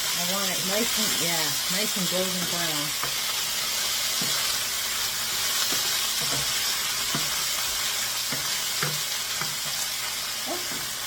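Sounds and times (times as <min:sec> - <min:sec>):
chicken sizzling in oil: 0:00.0 - 0:11.0
food knocking in pan: 0:05.6 - 0:09.9.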